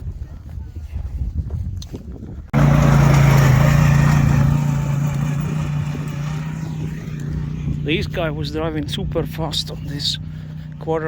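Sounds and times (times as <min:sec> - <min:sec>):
wind on microphone: 0:00.0 - 0:02.6
quad bike engine passing: 0:02.5 - 0:11.0.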